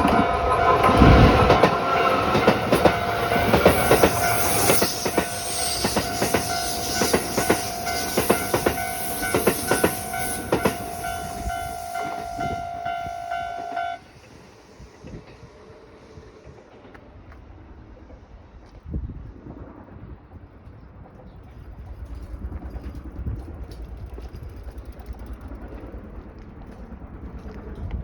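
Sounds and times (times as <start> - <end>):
crossing warning bell ringing: 0.0 - 14.1
train wheels clacking over rails: 0.0 - 17.5.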